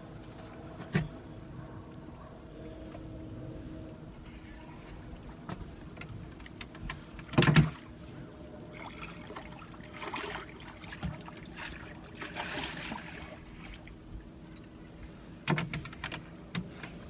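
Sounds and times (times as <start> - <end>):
rustles and scrapes: 16.6 - 17.0.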